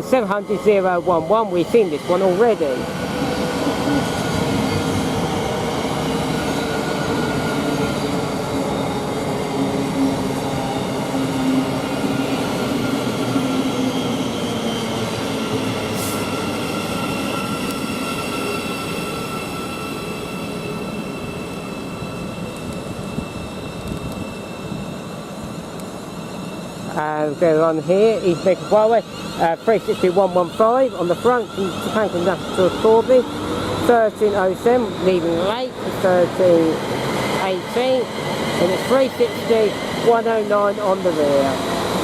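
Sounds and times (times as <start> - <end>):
wheel and rail rumble: 0.0 - 42.0.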